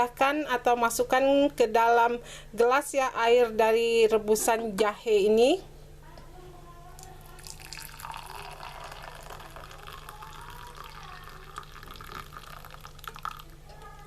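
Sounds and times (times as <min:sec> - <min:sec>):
water pouring into a glass: 0:07.2 - 0:14.0.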